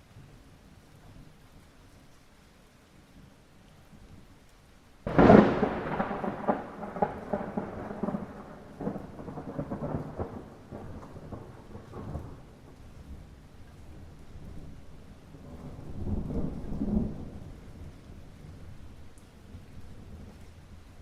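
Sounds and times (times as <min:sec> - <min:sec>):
light rain hiss: 0:00.0 - 0:21.0
rolling thunder: 0:05.0 - 0:12.8, 0:15.3 - 0:18.9
thunderclap: 0:05.1 - 0:12.6.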